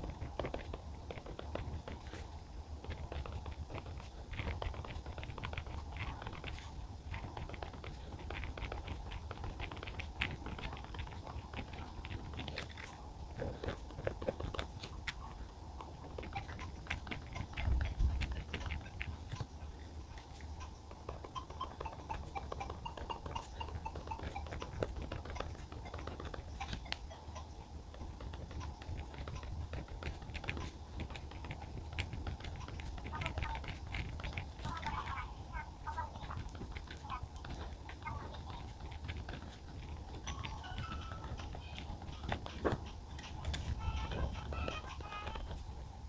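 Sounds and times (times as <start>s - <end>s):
pen writing on paper: 0.0s - 35.2s.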